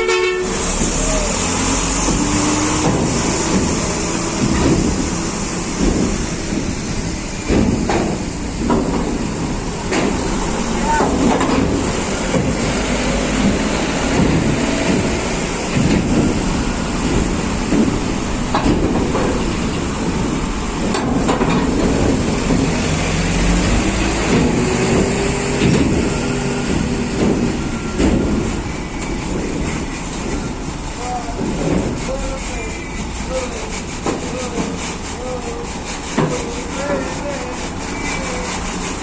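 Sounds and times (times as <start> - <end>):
truck engine rumbling: 0.0 - 39.0
sharp knocks: 0.6 - 30.5.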